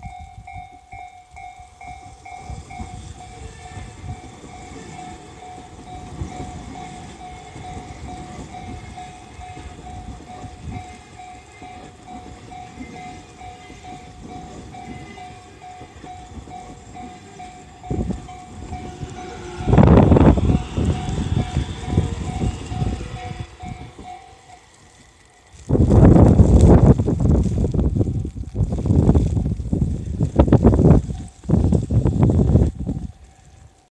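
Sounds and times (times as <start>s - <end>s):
level crossing bell ringing: 0.0s - 24.6s
train rumbling and clattering: 0.0s - 33.8s
loud bursts of noise: 17.9s - 27.0s.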